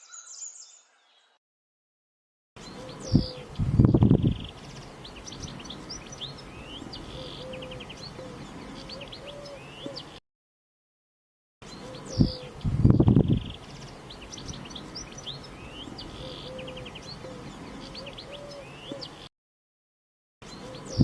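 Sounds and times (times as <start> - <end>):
small birds chirping: 0.0 - 1.4, 2.6 - 10.2, 11.6 - 19.3, 20.4 - 21.0
low repeated bird note: 2.7 - 10.2, 14.3 - 19.0.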